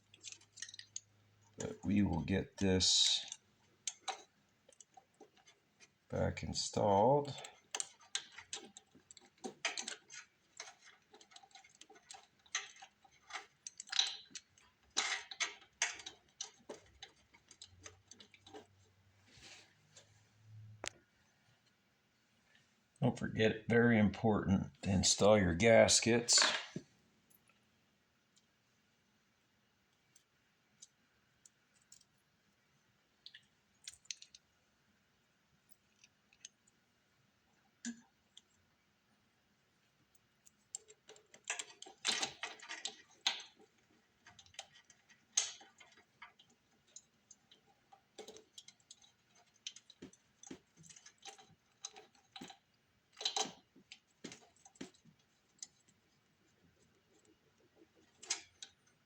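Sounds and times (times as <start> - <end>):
small parts clicking and rattling: 0.0 - 20.1, 24.8 - 27.6, 30.0 - 32.3, 33.2 - 34.6, 35.7 - 36.8, 40.0 - 59.0.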